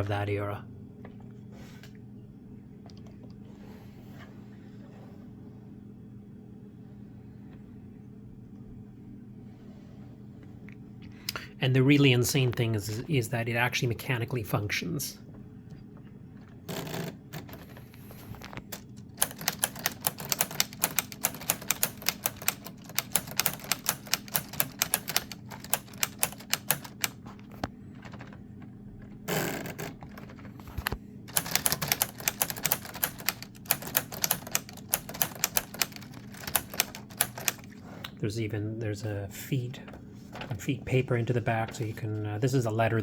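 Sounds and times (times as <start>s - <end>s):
plastic typewriter keystroke clicks: 19.2s - 27.2s, 29.6s - 37.7s.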